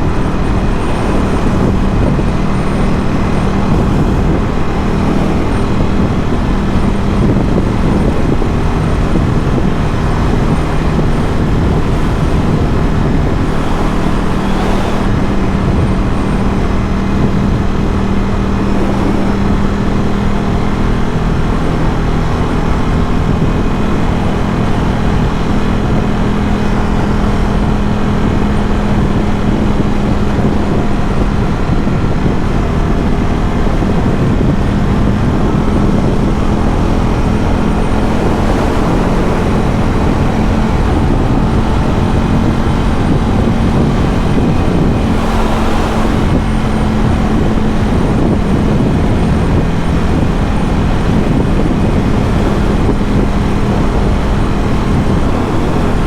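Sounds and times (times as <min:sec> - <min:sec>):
rushing noise: 0:00.0 - 0:21.9, 0:35.1 - 0:56.0
motorcycle engine cruising: 0:00.0 - 0:56.0.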